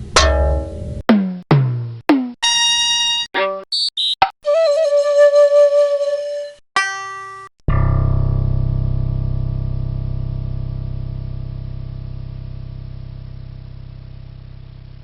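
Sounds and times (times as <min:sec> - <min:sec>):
deep struck ringing sound: 0:00.0 - 0:01.0, 0:07.7 - 0:14.9.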